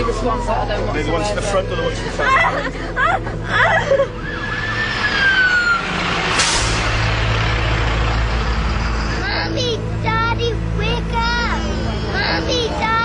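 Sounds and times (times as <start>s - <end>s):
siren wailing downward: 4.2s - 6.0s
loud whoosh: 5.6s - 9.1s
steady low rumble: 5.6s - 12.9s.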